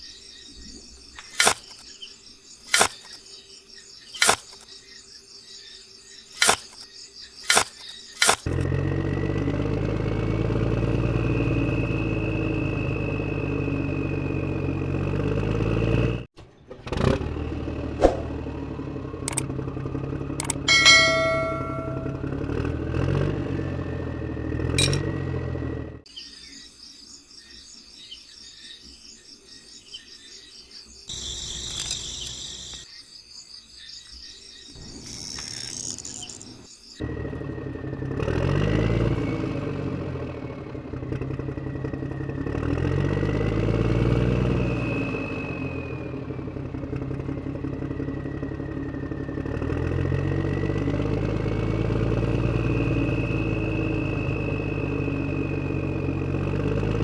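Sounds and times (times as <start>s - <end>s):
faint bird chirping: 0.0s - 8.5s, 26.1s - 37.0s
insect chirping: 0.0s - 8.6s, 26.1s - 37.0s
tractor engine revving: 1.2s - 1.8s, 2.7s - 3.2s, 4.2s - 4.6s, 6.4s - 26.0s, 37.0s - 57.0s.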